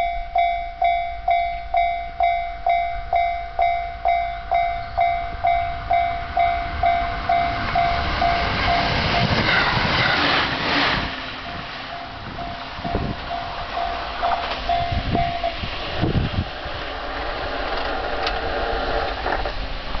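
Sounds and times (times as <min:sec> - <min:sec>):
level-crossing warning bell ringing: 0:00.0 - 0:10.3, 0:11.4 - 0:15.8
train running noise: 0:00.0 - 0:20.0.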